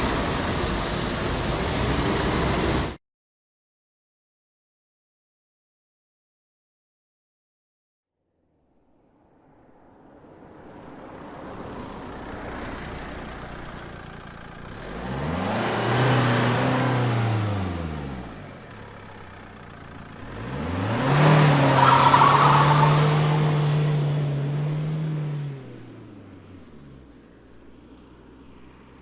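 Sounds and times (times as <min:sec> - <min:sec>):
car engine revving: 0:11.3 - 0:27.0.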